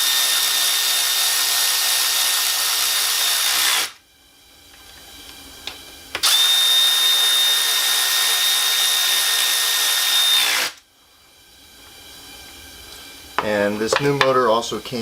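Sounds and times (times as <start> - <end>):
power drill running: 0.0 - 4.0, 6.1 - 10.8.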